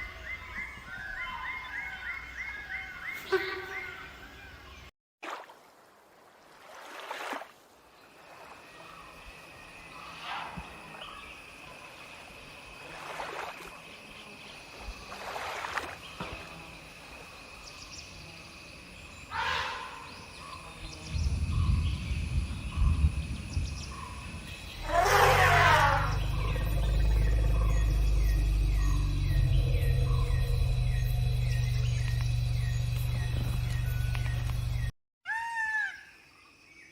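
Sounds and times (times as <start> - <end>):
wild animal calls: 24.8 - 33.4
low rumble: 24.8 - 34.9.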